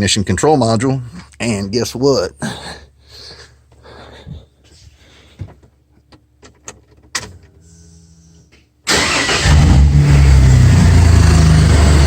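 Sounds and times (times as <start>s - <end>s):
truck engine starting and idling: 8.9s - 12.0s.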